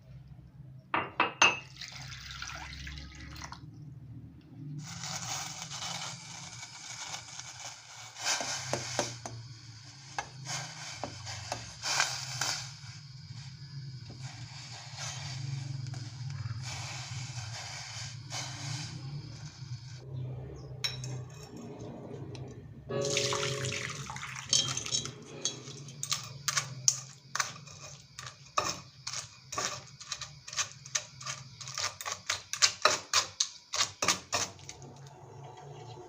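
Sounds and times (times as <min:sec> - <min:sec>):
water pouring: 0:01.6 - 0:03.6, 0:22.9 - 0:26.2
metal utensil scraping a pot: 0:20.8 - 0:23.8, 0:24.5 - 0:34.8.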